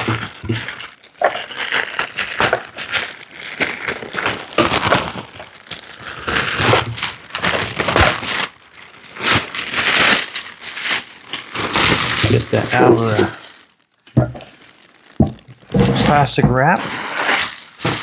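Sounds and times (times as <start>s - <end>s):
packing material crinkling: 0.0s - 18.0s.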